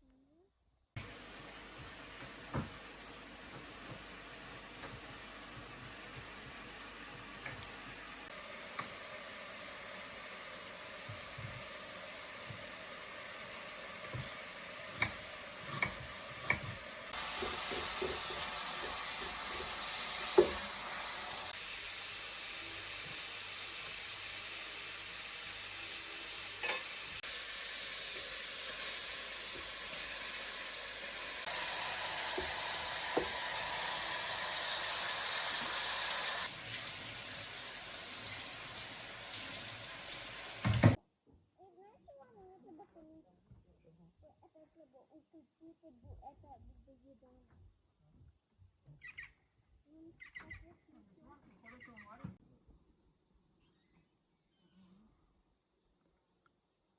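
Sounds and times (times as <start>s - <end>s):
food sizzling in a frying pan: 1.0s - 41.0s.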